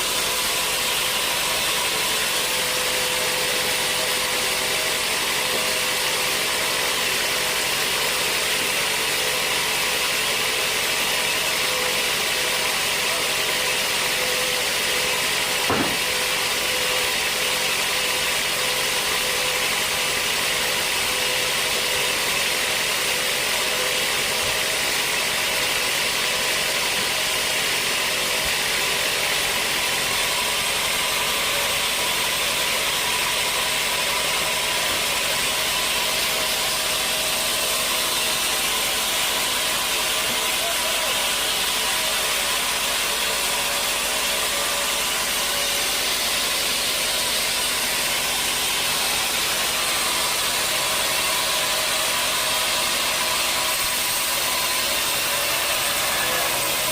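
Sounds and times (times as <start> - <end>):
sawmill machinery sawing logs: 0.0 - 56.9
brief knock: 15.7 - 16.2.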